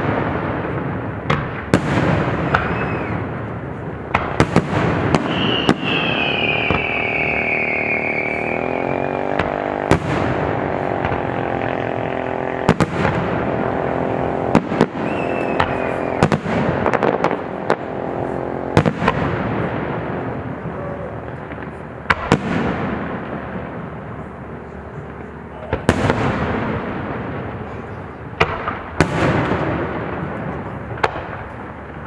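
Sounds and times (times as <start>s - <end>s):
fireworks shells bursting: 0.0s - 20.5s
fireworks rumble and crackle: 0.0s - 32.0s.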